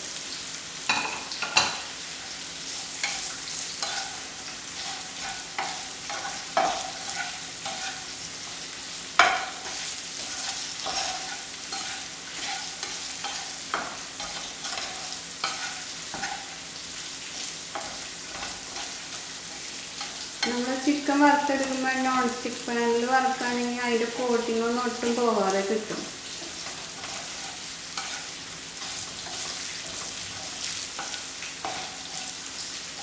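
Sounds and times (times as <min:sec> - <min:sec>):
chicken sizzling in hot oil: 0:00.0 - 0:33.0
spoon knocking and scraping pan: 0:00.9 - 0:01.9, 0:03.0 - 0:08.1, 0:09.2 - 0:16.6, 0:17.3 - 0:20.9, 0:25.9 - 0:32.4.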